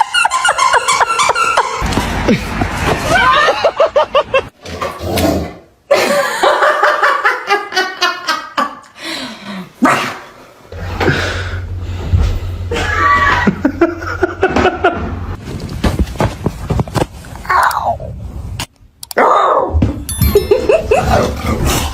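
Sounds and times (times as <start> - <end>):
people laughing: 0.0 - 4.5, 5.9 - 8.9, 12.7 - 15.2, 20.3 - 21.5.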